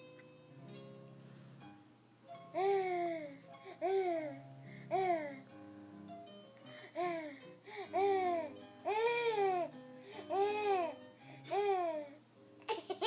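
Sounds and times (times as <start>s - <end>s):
faint music: 0.0s - 13.0s
baby babbling: 2.6s - 5.4s, 7.0s - 9.7s, 10.3s - 13.0s.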